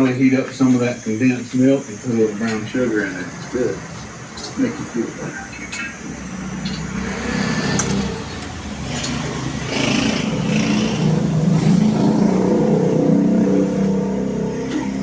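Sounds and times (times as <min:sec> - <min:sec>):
motor humming: 0:06.0 - 0:15.0.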